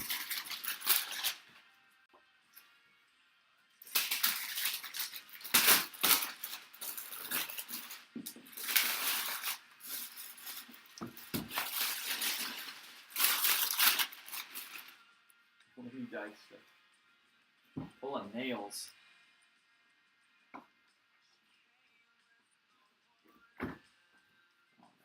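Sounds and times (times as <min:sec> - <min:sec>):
plastic wrap tearing and crinkling: 0:00.0 - 0:01.5, 0:03.8 - 0:15.0.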